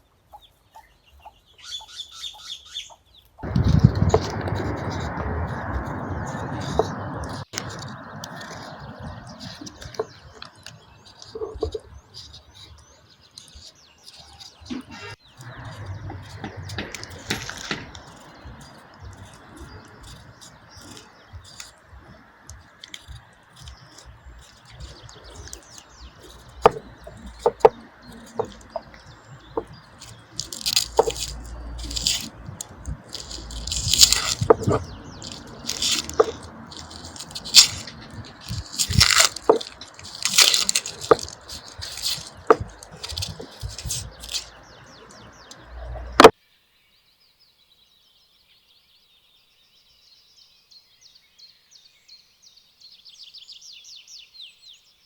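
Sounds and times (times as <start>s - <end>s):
faint birdsong: 0.0s - 55.0s
wet squelching and rustling: 3.4s - 46.3s
clicks and knocks of food handling: 22.5s - 46.3s.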